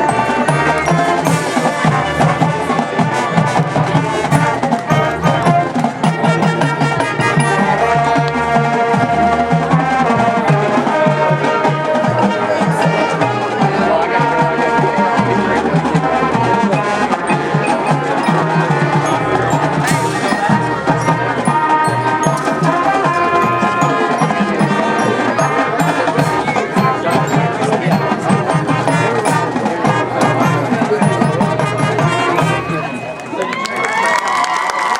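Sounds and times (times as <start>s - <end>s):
brass playing: 0.0s - 33.4s
mallet percussion: 0.0s - 33.4s
drums: 0.0s - 34.9s.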